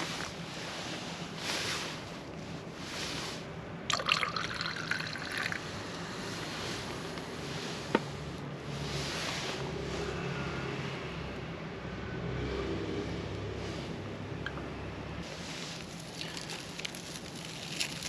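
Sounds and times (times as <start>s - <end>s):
wood fire crackling and hissing: 0.0s - 9.9s, 15.2s - 18.0s.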